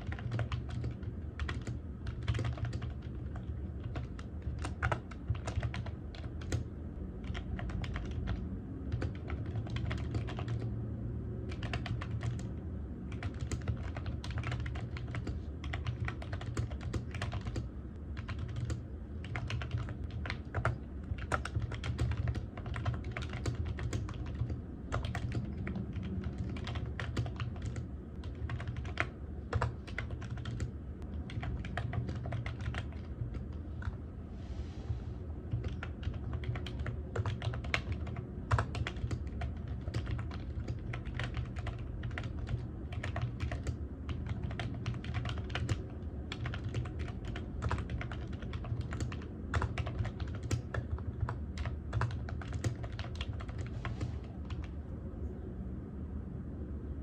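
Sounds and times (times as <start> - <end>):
typing on keyboard: 0.0 - 10.7, 11.4 - 34.0, 35.5 - 54.8
low steady hum: 0.0 - 57.0.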